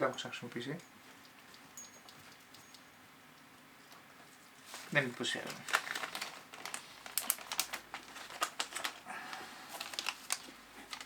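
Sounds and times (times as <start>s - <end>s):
packaging rustle: 4.7s - 11.0s.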